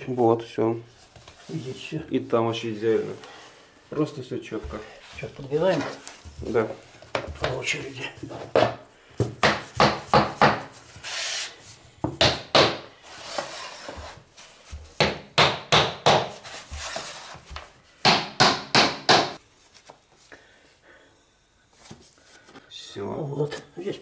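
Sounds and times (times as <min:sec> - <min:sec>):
hammer knocking floorboards: 0:08.5 - 0:10.7.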